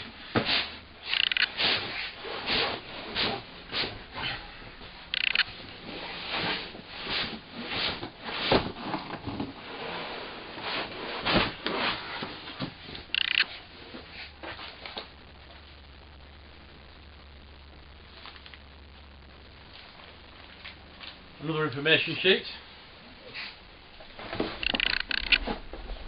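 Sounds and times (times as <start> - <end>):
sharp crinkles: 1.0 - 9.1, 10.7 - 21.4, 23.3 - 26.0
packaging rustling and scraping: 5.6 - 15.1.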